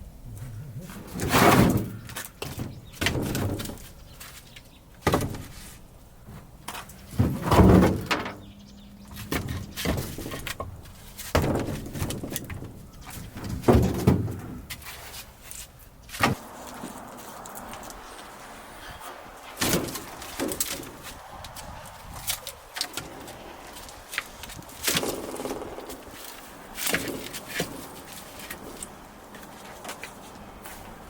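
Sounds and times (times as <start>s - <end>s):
logs knocking together: 0.9s - 8.5s, 9.1s - 15.2s, 19.6s - 30.1s.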